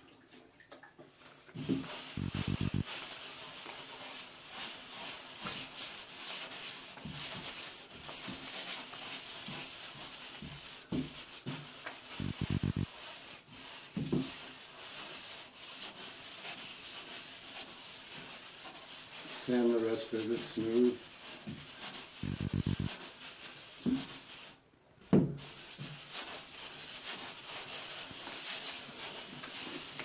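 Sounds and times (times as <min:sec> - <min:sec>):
sanding block scrubbing drywall: 0:01.6 - 0:24.6, 0:25.3 - 0:30.0.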